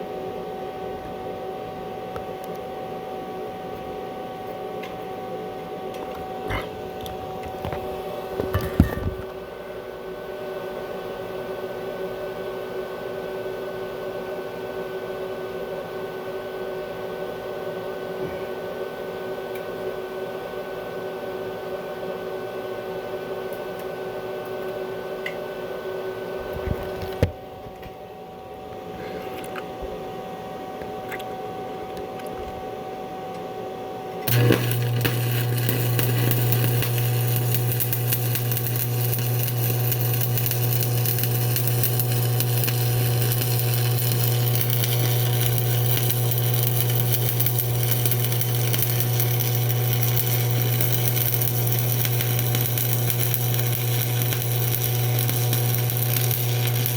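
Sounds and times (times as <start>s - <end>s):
steady hum: 0.0s - 56.9s
welding arc buzzing and crackling: 6.5s - 9.3s, 34.2s - 56.9s.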